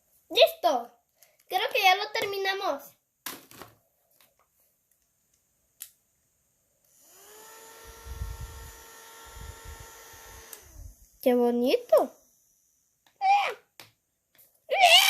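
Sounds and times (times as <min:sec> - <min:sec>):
small fan motor whining: 0:06.8 - 0:13.3
airflow buffeting microphone: 0:07.9 - 0:11.2.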